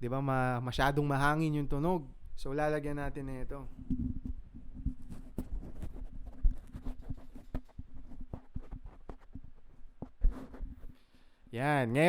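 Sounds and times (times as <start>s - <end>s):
microphone handling knocks: 3.7s - 10.9s.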